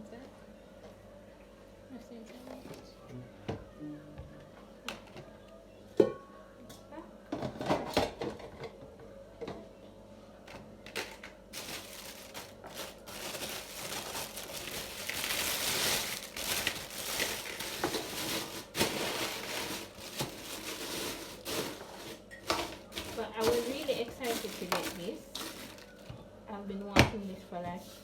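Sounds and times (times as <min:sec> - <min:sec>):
packaging crinkling and rustling: 0:10.9 - 0:26.1.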